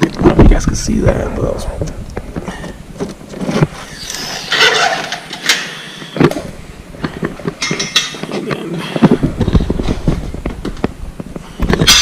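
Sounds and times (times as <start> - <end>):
metal tools clanking: 7.6 - 8.4, 11.8 - 12.0.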